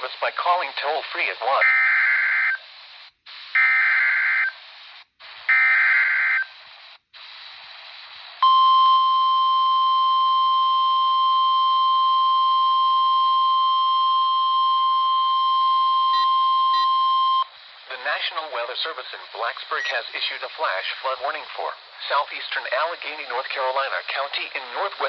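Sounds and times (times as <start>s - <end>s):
radio static: 0.0s - 8.4s, 17.6s - 25.0s
steady warning alarm tone: 8.4s - 17.4s
screechy digital data bursts: 19.8s - 20.0s.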